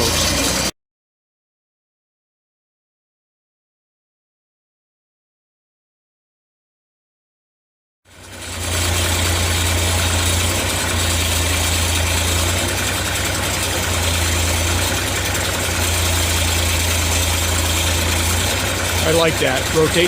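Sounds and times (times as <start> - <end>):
sawmill engine humming: 0.0 - 0.7, 8.1 - 20.0.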